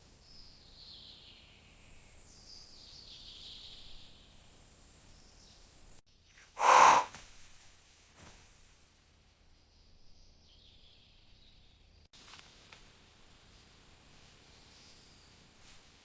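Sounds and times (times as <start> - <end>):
baby panda sneezing: 6.6 - 7.1
faint high hiss: 6.6 - 8.6.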